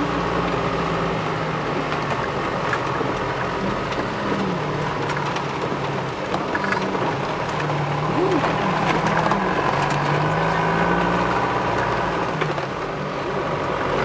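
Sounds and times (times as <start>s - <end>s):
car engine running: 0.0s - 14.0s.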